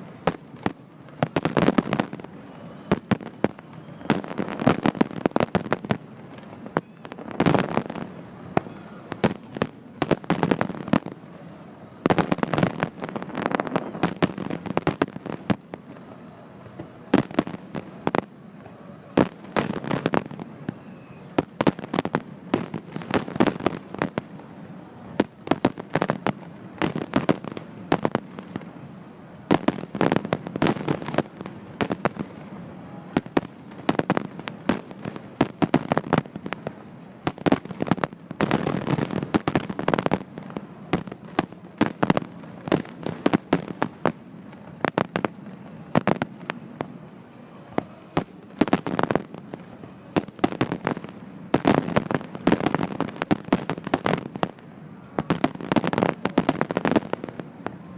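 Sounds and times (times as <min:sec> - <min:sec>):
fireworks bangs and crackles: 0:00.0 - 0:57.9.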